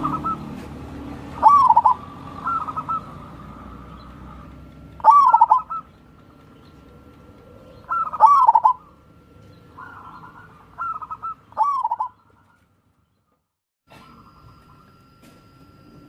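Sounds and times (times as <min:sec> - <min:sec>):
dove cooing in rolling phrases: 0:00.0 - 0:12.6.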